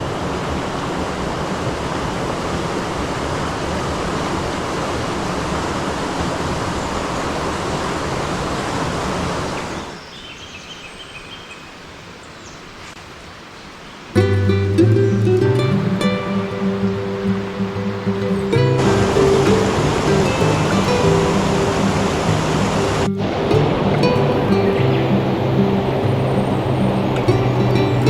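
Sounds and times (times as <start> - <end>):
stream water rushing: 0.0 - 28.0
acoustic guitar music: 14.2 - 28.0.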